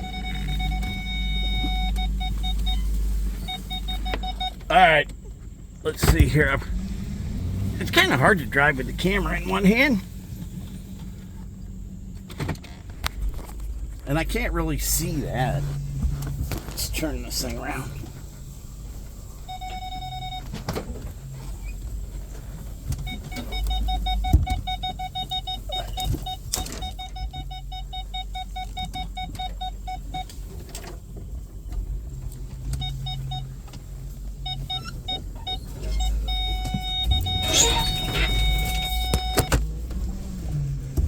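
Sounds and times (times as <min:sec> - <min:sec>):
vehicle warning beeper: 0:00.0 - 0:05.2, 0:05.8 - 0:11.9, 0:14.1 - 0:30.9, 0:32.5 - 0:40.8
low-running vehicle engine: 0:00.0 - 0:41.0.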